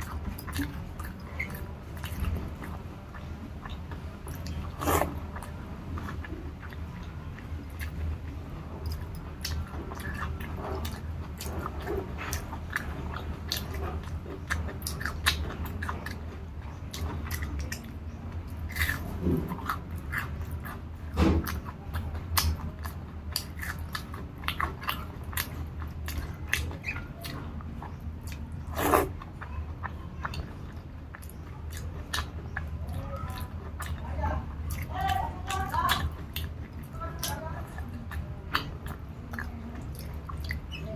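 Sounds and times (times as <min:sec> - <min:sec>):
person chewing food: 0:00.0 - 0:40.9.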